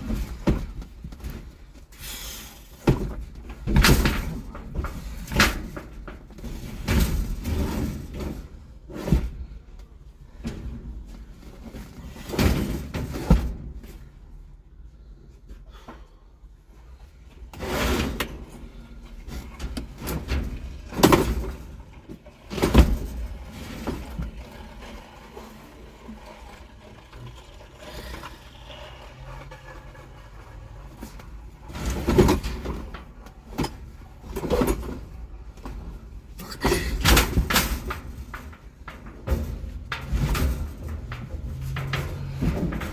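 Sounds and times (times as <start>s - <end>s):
loud knocks and thumps: 36.4s - 42.9s.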